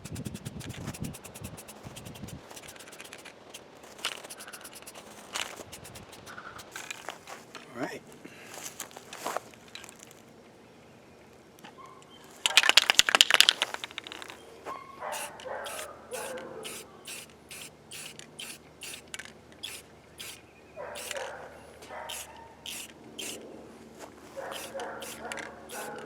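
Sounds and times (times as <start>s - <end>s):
short spray bursts: 0.0s - 6.9s, 15.1s - 20.4s, 21.0s - 21.2s, 22.1s - 23.4s, 24.5s - 26.0s
spray can rattling: 0.0s - 7.0s, 12.6s - 14.3s, 15.1s - 20.4s, 21.0s - 21.3s, 22.1s - 23.4s, 24.5s - 26.0s.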